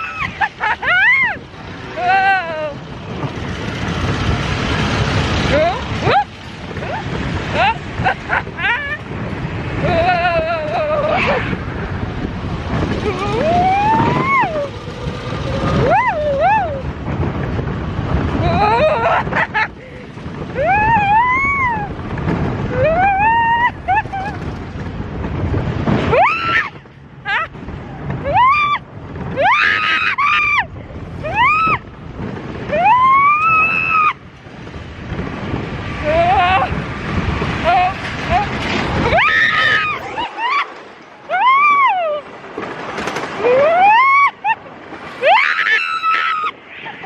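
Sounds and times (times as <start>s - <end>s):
rising and falling whoop: 0.0s - 3.0s, 5.5s - 17.6s, 18.2s - 19.8s, 20.5s - 24.6s, 26.0s - 32.0s, 32.6s - 34.4s, 36.0s - 37.0s, 37.6s - 42.4s, 43.3s - 47.0s
riders screaming: 0.0s - 24.7s, 25.9s - 35.2s, 35.8s - 47.0s
rush of wind: 0.0s - 47.0s
steady rumbling background: 0.0s - 47.0s
people crying out: 37.6s - 42.3s.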